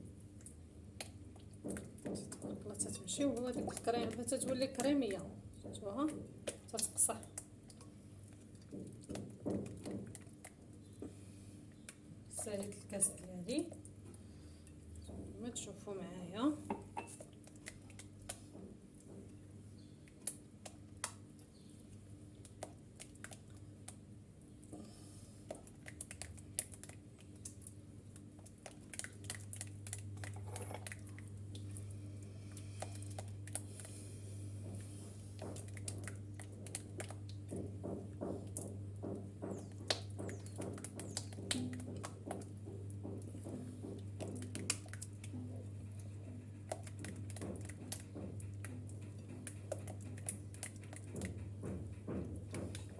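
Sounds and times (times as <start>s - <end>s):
utensil tapping a pot: 16.7s - 17.3s
steady low hum: 29.3s - 40.8s.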